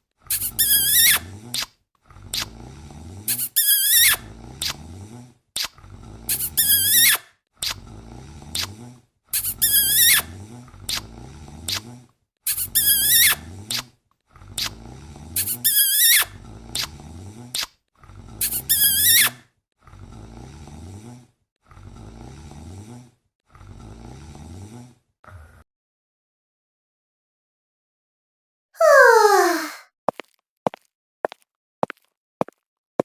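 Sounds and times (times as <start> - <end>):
snoring: 0.0 - 25.7.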